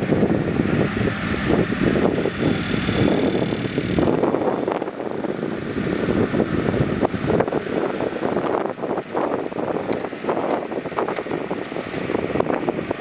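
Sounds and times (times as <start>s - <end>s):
machinery rattle and clatter: 0.0s - 4.8s
earthmoving machinery engine: 0.0s - 13.0s.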